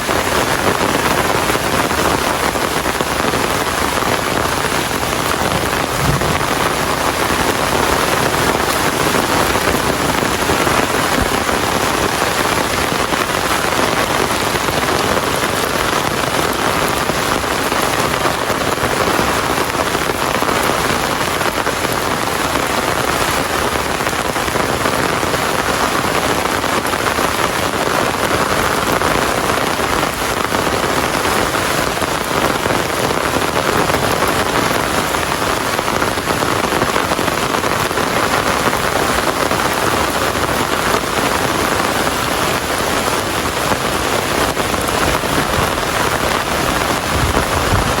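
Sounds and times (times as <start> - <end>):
rain pattering on surfaces: 0.0 - 48.0.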